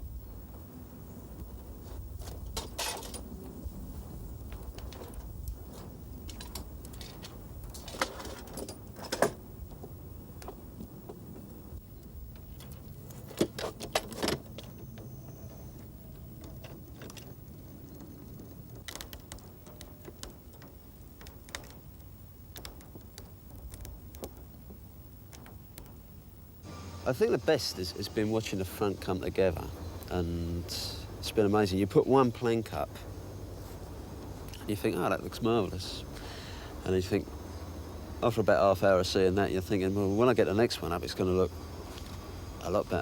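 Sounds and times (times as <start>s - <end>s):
low steady rumble: 0.0s - 43.0s
sharp knocks and clicks: 18.0s - 26.0s.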